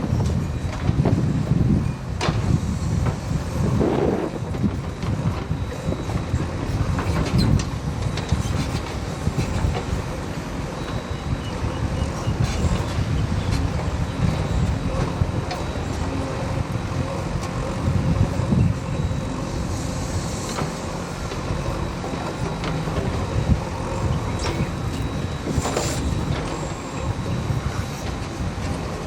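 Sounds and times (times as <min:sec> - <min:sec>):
diesel engine rumbling: 0:00.0 - 0:29.0
high metallic squeal: 0:18.5 - 0:28.0.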